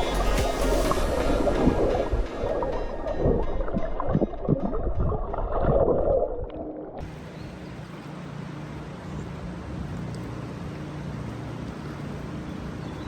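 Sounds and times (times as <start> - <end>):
low hum: 0.0 - 7.6
river water splashing: 0.0 - 13.0.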